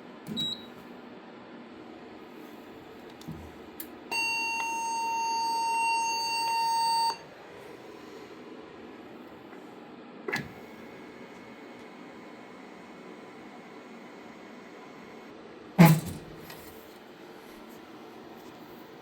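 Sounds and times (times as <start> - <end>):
electronic fire alarm tone: 4.1 - 7.3.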